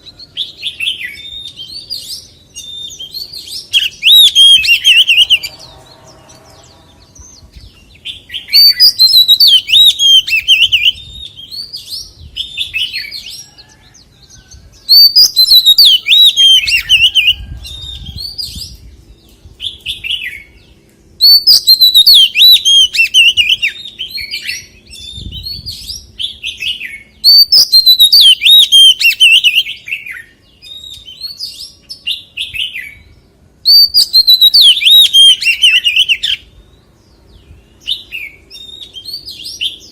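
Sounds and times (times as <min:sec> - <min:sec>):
bird whistled song: 0:00.0 - 0:13.8, 0:14.8 - 0:36.5, 0:37.3 - 0:39.9.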